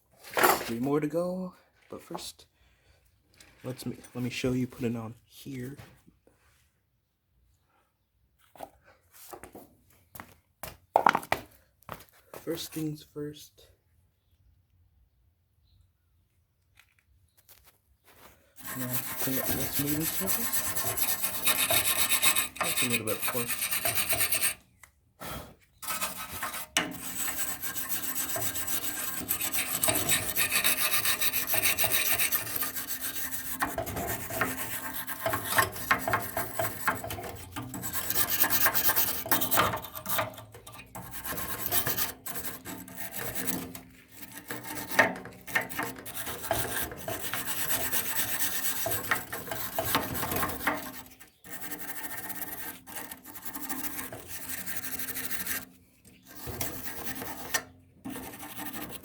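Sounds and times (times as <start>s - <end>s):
scrubbing metal surface: 18.6s - 24.6s, 25.8s - 59.0s.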